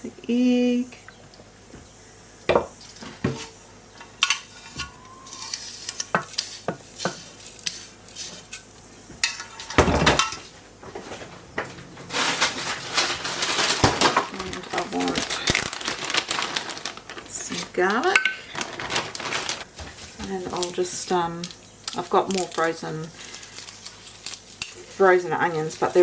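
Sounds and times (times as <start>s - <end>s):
utensils and dishes clinking: 8.3s - 10.5s, 11.8s - 16.2s, 17.5s - 19.4s.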